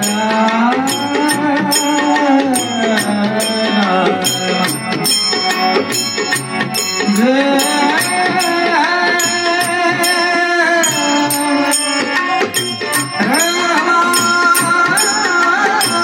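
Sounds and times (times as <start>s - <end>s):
sustained harmonium: 0.0s - 16.0s
tabla beat: 0.0s - 16.0s.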